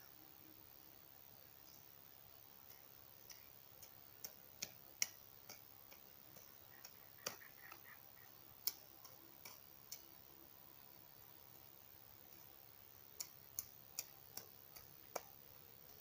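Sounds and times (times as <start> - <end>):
light clicks and taps: 2.7 - 10.2, 13.2 - 16.0.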